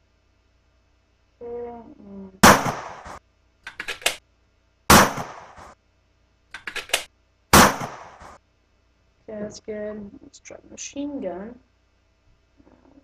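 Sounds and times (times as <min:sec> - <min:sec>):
gunshots: 0:02.4 - 0:03.2, 0:04.9 - 0:05.8, 0:06.8 - 0:08.4
quick clicks: 0:02.8 - 0:04.2, 0:06.5 - 0:07.1.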